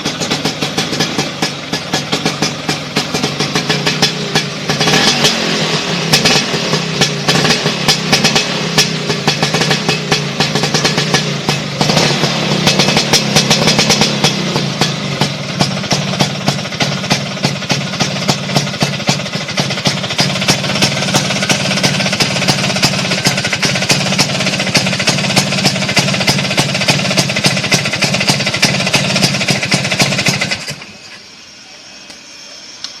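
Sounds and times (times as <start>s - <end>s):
scooter two-stroke engine: 0.0s - 33.0s.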